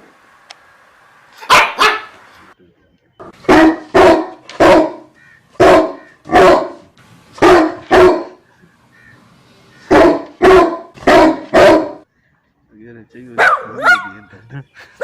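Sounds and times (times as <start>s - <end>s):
dog barking: 1.4s - 2.2s, 3.4s - 6.8s, 7.4s - 8.4s, 9.9s - 12.0s, 13.4s - 14.2s.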